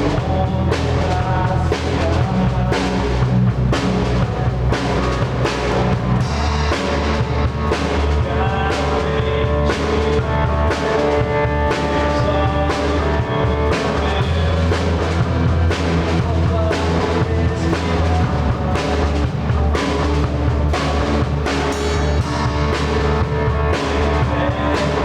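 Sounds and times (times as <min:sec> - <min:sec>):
drum kit beat: 0:00.0 - 0:25.0
rock band playing: 0:00.0 - 0:25.0.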